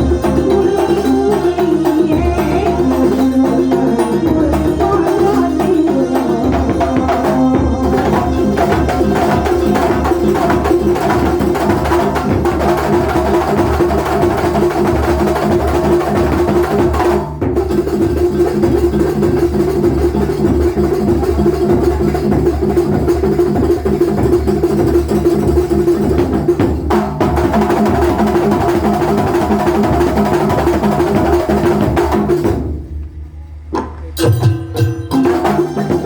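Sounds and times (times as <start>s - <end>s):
held melody line: 0.0s - 14.8s, 34.2s - 36.0s
fast dense drumming: 0.0s - 36.0s.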